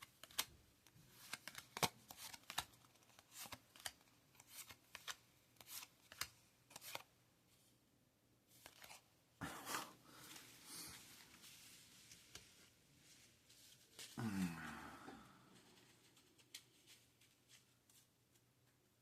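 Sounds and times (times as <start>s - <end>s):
cards rustling: 0.0s - 0.5s, 1.1s - 7.1s, 8.5s - 14.5s, 15.2s - 18.4s
cards snapping and sliding: 0.0s - 0.5s, 1.2s - 7.1s, 8.6s - 9.0s.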